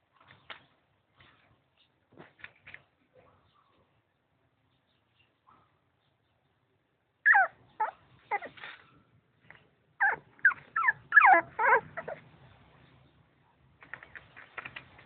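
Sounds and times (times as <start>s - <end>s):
dog whimpering: 7.3s - 8.6s, 10.0s - 12.2s.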